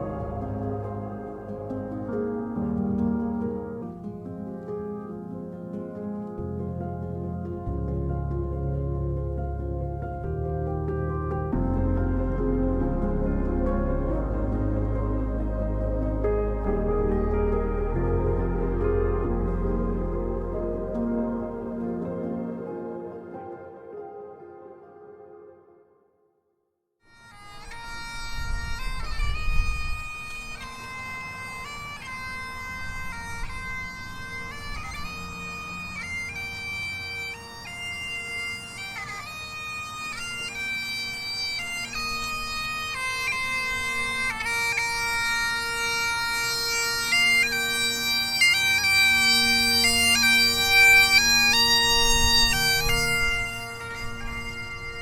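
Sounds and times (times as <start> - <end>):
bagpipes playing a tune: 0.0 - 3.1, 11.1 - 23.0, 27.2 - 55.0.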